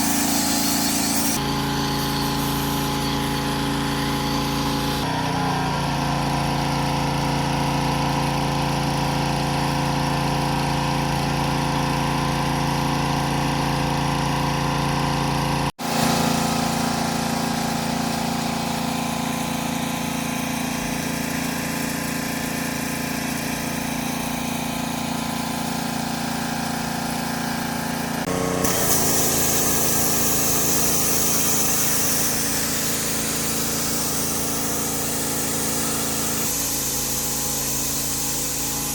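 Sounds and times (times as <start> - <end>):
water jet hissing: 0.0 - 5.1, 27.8 - 38.9
pressure washer motor and pump: 0.0 - 38.9.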